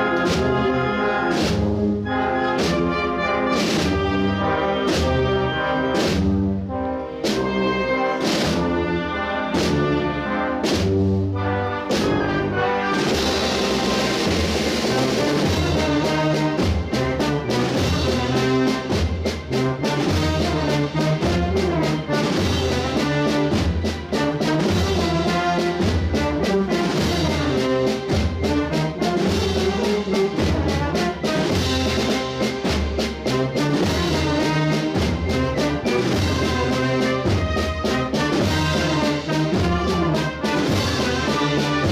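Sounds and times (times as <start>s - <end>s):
percussion strikes: 0.0s - 6.6s, 11.8s - 41.9s
brass band playing slow march: 0.0s - 41.9s
drum strokes: 1.3s - 1.9s, 4.8s - 6.6s, 10.6s - 11.3s, 12.8s - 41.9s.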